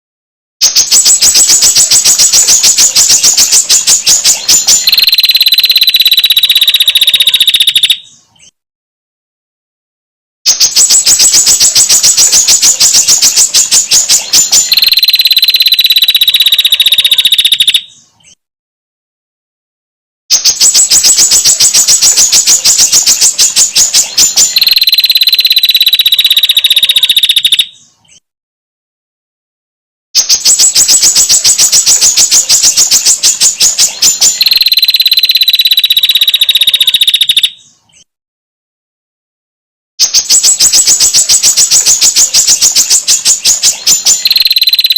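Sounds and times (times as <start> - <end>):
bird rattling trill call: 0.6 - 8.1, 10.5 - 17.9, 20.3 - 27.8, 30.2 - 37.6, 40.0 - 44.9.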